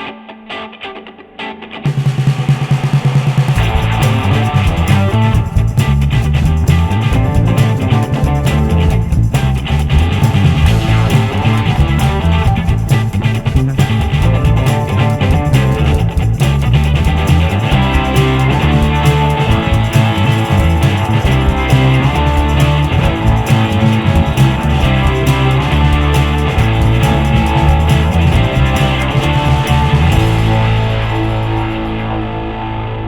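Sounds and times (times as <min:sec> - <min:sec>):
rock music with guitars and bass: 0:00.0 - 0:33.0.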